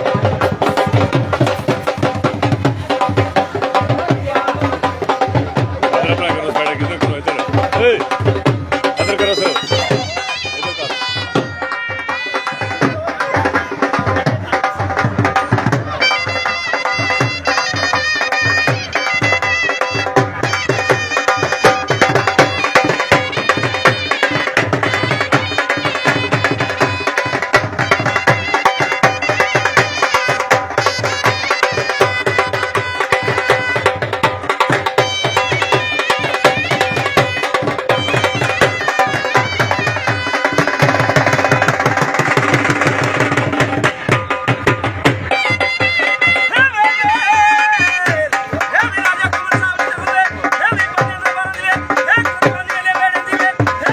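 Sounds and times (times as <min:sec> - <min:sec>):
folk music with fast drum beat: 0:00.0 - 0:53.9.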